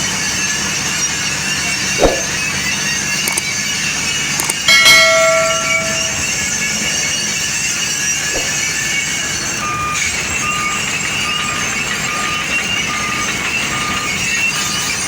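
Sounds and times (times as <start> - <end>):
heavy machinery running: 0.0 - 15.0
reversing alarm beeping: 0.0 - 15.0
loud metallic clang: 2.0 - 2.6, 4.7 - 6.5, 8.3 - 9.0.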